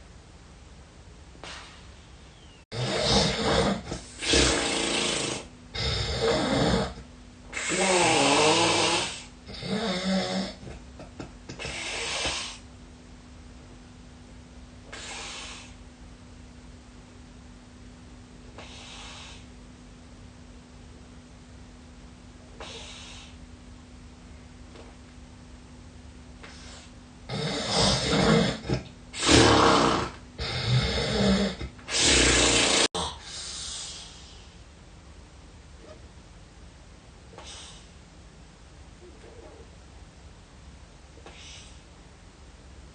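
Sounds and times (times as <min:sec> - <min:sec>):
soft noisy breaths: 0:01.2 - 0:42.9
person snoring heavily: 0:02.7 - 0:10.7, 0:11.6 - 0:12.6, 0:26.4 - 0:34.0.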